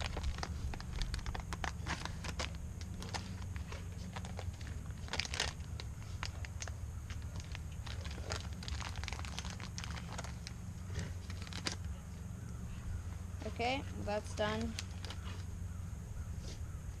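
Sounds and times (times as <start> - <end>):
wrapping crinkling: 0.0 - 11.9, 14.6 - 15.5
steady low hum: 0.0 - 17.0.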